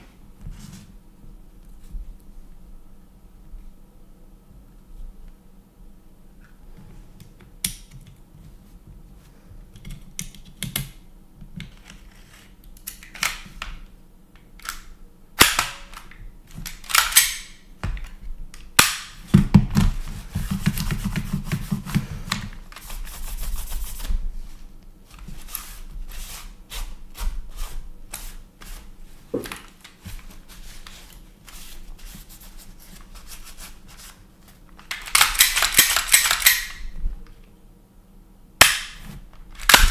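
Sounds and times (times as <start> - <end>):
sharp mechanical clicks: 34.9 - 36.8.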